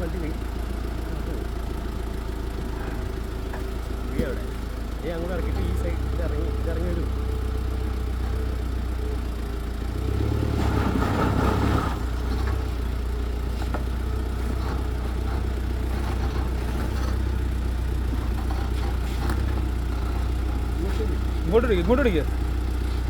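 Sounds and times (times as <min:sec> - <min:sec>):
vehicle engine running: 0:00.0 - 0:23.0.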